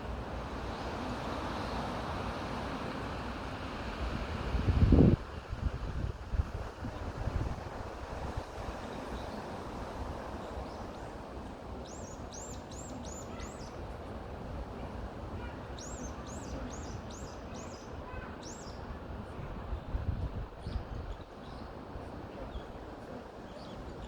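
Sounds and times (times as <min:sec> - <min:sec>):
wind in forest trees: 0:00.0 - 0:24.0.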